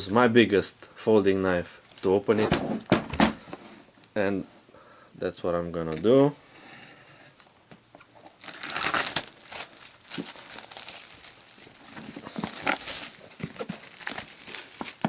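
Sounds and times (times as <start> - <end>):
plastic wrap crinkling and tearing: 8.2 - 15.0.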